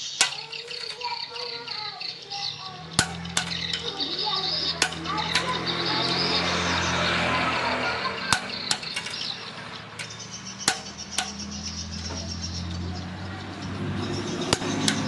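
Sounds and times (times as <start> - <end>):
sharp knocks: 3.0 - 4.0, 4.7 - 7.3, 8.2 - 12.5, 14.2 - 15.0.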